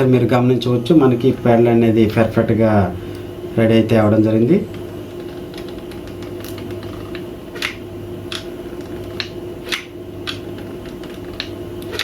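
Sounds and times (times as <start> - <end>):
sewing machine motor hum: 4.1 - 12.0.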